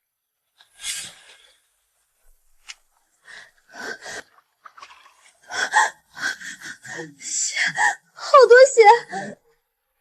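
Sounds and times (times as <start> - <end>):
woman gasping: 5.4 - 8.2.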